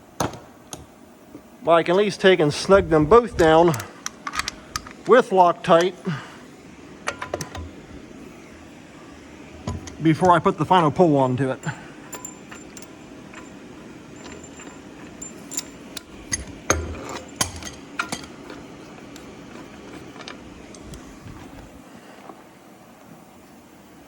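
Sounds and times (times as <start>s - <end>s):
steady low hum: 0.0s - 24.0s
metal tools clinking: 11.6s - 20.8s.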